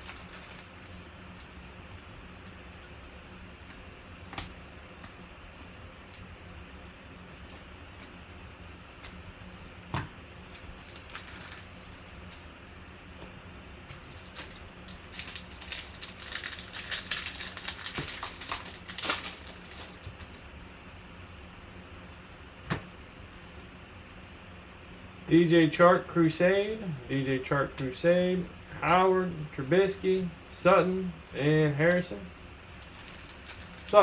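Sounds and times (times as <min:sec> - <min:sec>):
card packs crackling rustle: 0:00.0 - 0:03.1, 0:10.4 - 0:12.8, 0:13.9 - 0:20.6, 0:31.4 - 0:34.0
low electrical hum: 0:00.0 - 0:34.0.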